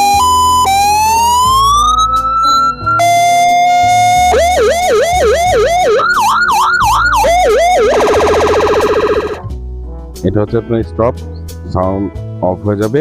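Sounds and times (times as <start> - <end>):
electronic siren changing tones: 0.0 - 9.5.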